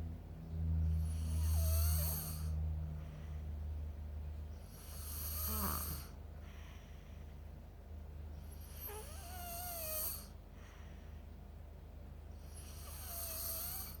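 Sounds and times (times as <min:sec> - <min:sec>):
child snoring with whistling note: 0:01.0 - 0:02.6, 0:04.8 - 0:06.1, 0:08.6 - 0:10.3, 0:12.5 - 0:14.0.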